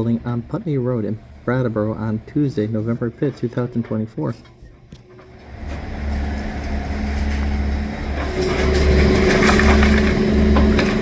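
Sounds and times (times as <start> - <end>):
diesel engine droning: 0.0 - 11.0
debris cracking and crunching: 5.2 - 11.0.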